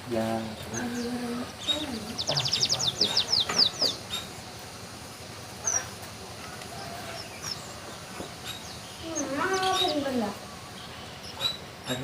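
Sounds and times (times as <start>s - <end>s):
finch singing trill: 0.6s - 4.4s, 8.4s - 12.0s.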